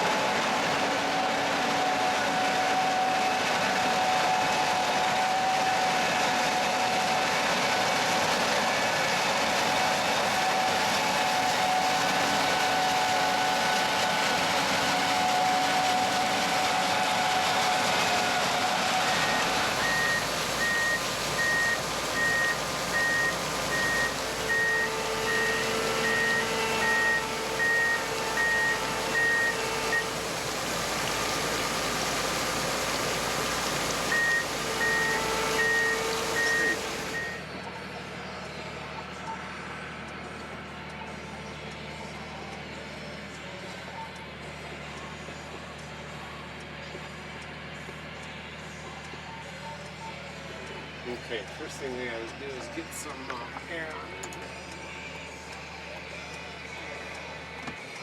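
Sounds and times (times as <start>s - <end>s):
combine harvester running: 0.0s - 58.0s
electronic alarm beeping: 19.1s - 30.2s, 34.1s - 37.5s.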